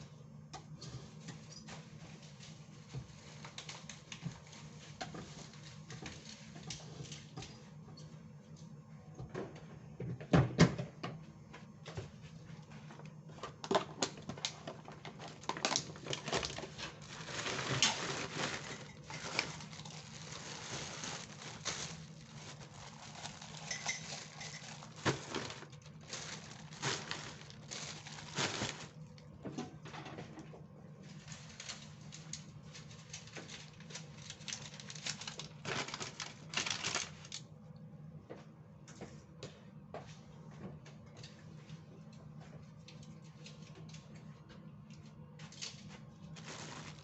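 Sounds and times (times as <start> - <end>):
kitchenware clattering: 23.5 - 25.5.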